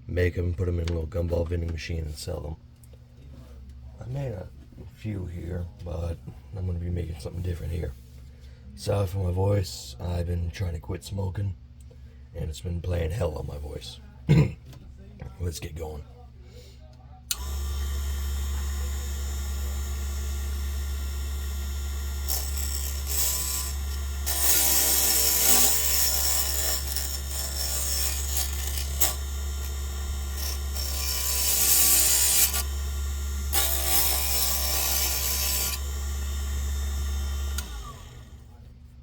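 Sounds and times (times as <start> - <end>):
cutting tool scraping wood: 17.3 - 38.2
lathe motor humming: 17.3 - 38.4.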